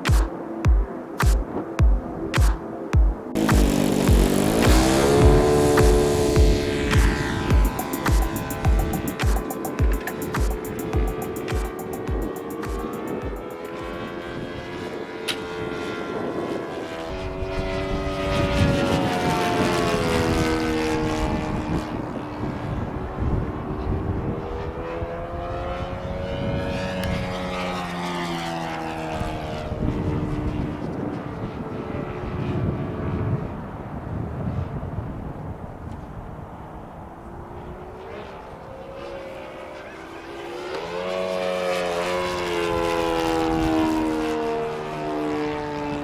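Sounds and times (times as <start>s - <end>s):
model airplane propeller drone: 3.4s - 46.0s
wind buffeting microphone: 13.3s - 27.8s, 29.0s - 38.8s.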